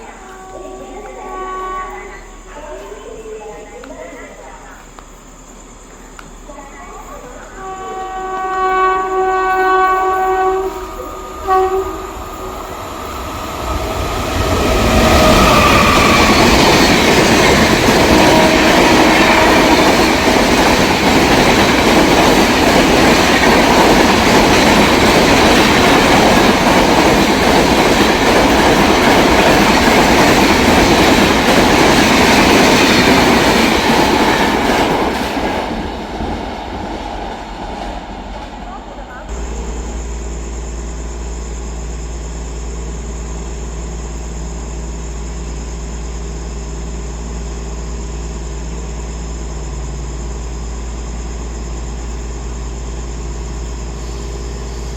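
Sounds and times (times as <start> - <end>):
train horn blasts: 0.0 - 2.4, 7.6 - 13.9, 17.9 - 20.1
train wheels rushing on rails: 0.0 - 54.9.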